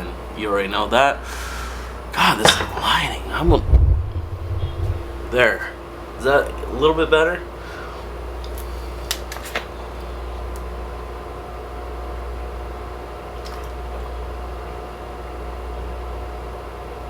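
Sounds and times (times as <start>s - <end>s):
faint constant tone: 0.0s - 8.6s
low mechanical hum of machinery: 0.0s - 17.0s.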